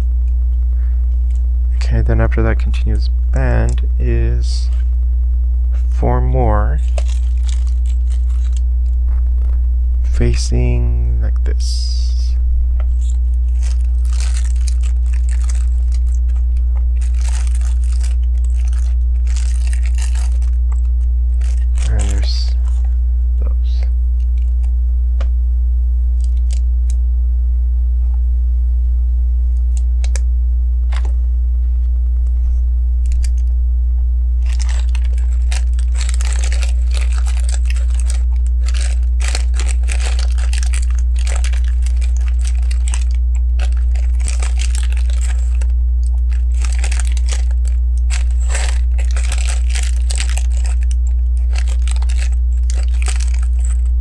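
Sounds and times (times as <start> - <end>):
steady low hum: 0.0 - 54.0
plastic pieces rattling: 6.8 - 8.6, 13.0 - 16.4, 17.0 - 22.9, 34.4 - 53.9.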